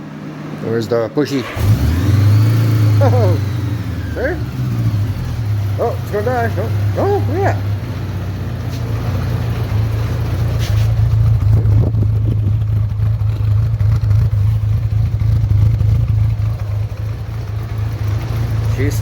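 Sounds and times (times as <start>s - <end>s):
motorcycle engine idling: 2.8s - 19.0s.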